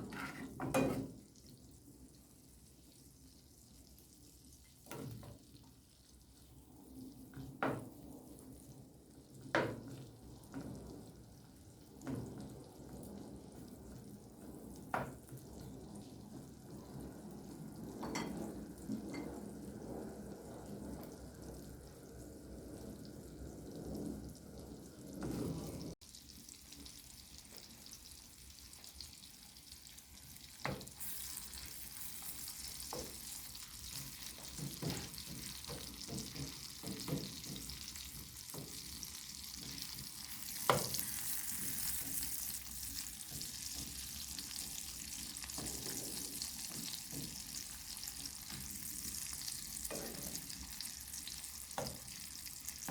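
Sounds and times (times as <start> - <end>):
food sizzling in a pan: 0.0 - 52.9
utensil clacking against pan: 32.8 - 44.5.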